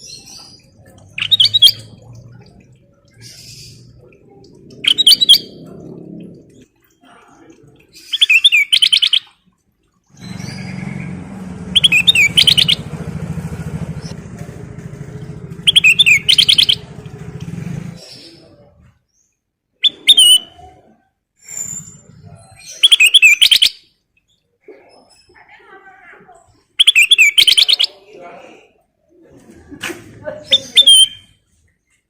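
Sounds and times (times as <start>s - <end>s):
bird singing rapid notes: 0.0s - 4.1s, 4.8s - 5.6s, 8.0s - 9.4s, 10.1s - 14.4s, 15.0s - 17.4s, 19.8s - 20.5s, 22.7s - 23.8s, 26.8s - 28.0s
low engine-like rumble: 0.0s - 7.9s, 10.1s - 19.1s.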